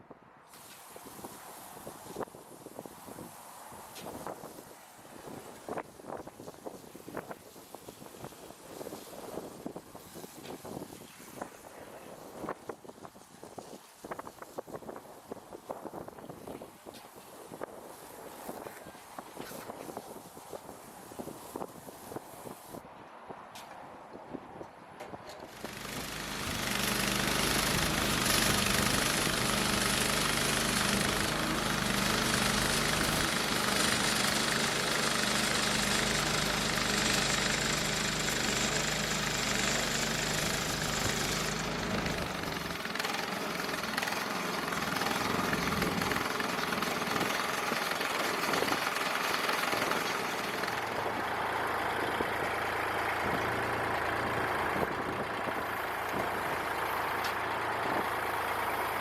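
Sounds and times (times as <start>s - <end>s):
high noisy hiss: 0.5s - 22.8s, 25.5s - 51.2s
sawmill gas engine running: 25.3s - 59.0s.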